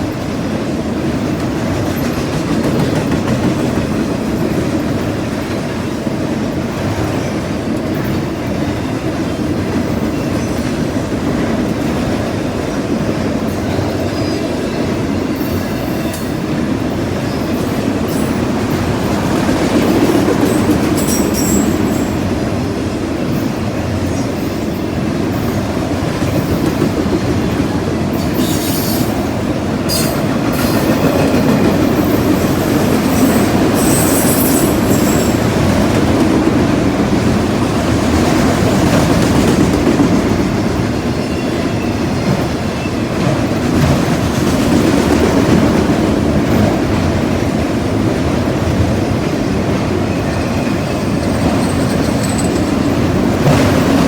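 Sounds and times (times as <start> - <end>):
freight train wheels rumbling: 0.0 - 54.0
high-pitched wheel squeals: 21.0 - 22.1, 33.1 - 35.5, 50.5 - 53.1.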